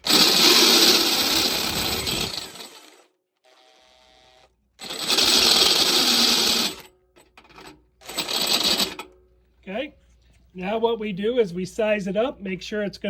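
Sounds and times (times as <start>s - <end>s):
power drill cutting a hole: 0.0s - 6.9s, 8.0s - 8.9s.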